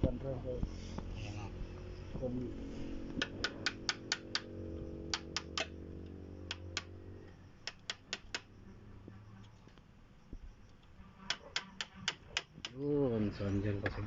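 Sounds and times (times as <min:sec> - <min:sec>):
low steady hum: 0:00.0 - 0:11.3
sharp clicks: 0:03.2 - 0:04.5, 0:05.1 - 0:06.9, 0:07.6 - 0:08.5, 0:10.7 - 0:12.8.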